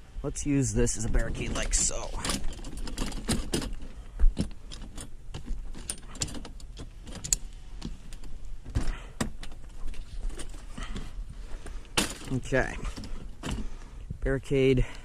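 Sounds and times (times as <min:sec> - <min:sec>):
steady low rumble: 0:00.0 - 0:02.7
barricade clattering and knocking: 0:01.2 - 0:13.8.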